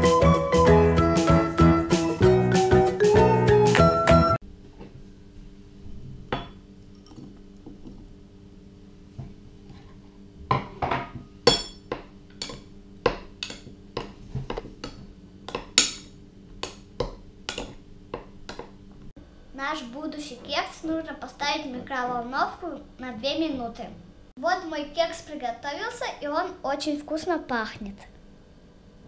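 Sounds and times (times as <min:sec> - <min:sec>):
utensil clinking in a dish: 0:10.9 - 0:14.1.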